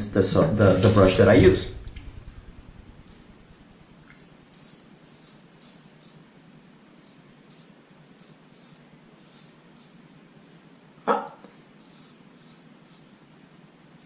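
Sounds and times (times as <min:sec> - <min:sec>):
shaving brush swishing lather: 0:00.6 - 0:01.6.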